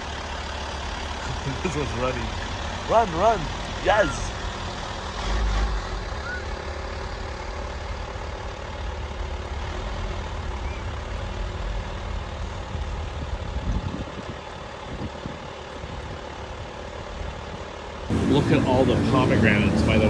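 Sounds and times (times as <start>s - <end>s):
steady low rumble: 10.9s - 20.0s.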